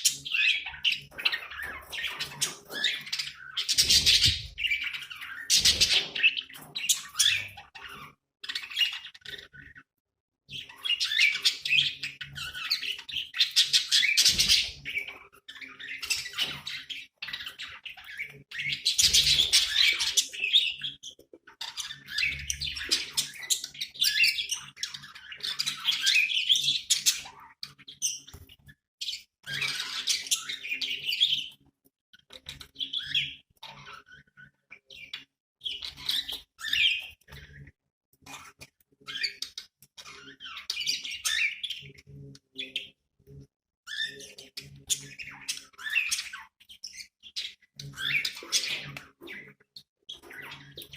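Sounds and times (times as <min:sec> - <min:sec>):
budgerigars chattering: 0:43.9 - 0:50.9.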